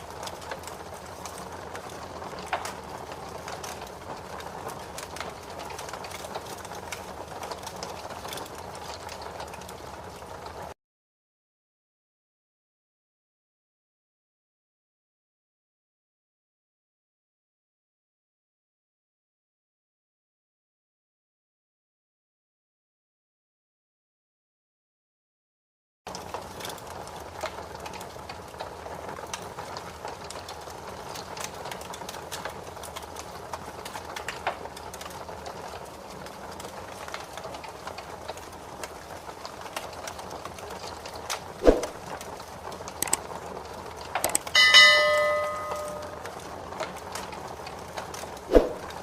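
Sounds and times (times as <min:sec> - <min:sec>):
wood fire crackling: 0:00.0 - 0:10.8, 0:26.1 - 0:49.0
metallic bell-like ring: 0:44.6 - 0:46.3.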